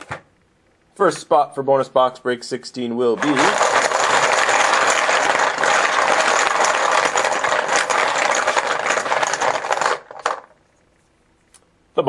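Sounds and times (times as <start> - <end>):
chips clattering in container: 3.2 - 10.6.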